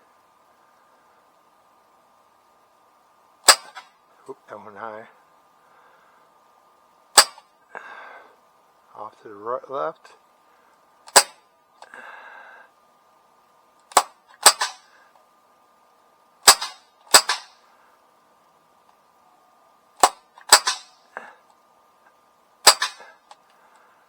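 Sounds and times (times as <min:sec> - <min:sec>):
bb pistol firing pops: 0:03.4 - 0:03.8, 0:07.2 - 0:07.4, 0:11.1 - 0:11.4, 0:13.9 - 0:14.8, 0:16.4 - 0:17.5, 0:20.0 - 0:20.9, 0:22.6 - 0:23.1
person speaking: 0:04.2 - 0:05.2.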